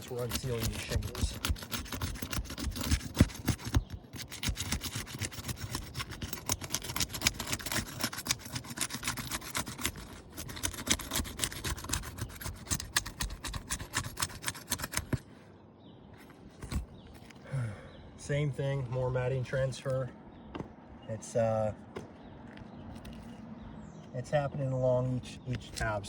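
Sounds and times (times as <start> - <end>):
shingles tearing with crackling scrape: 0.0 - 15.2.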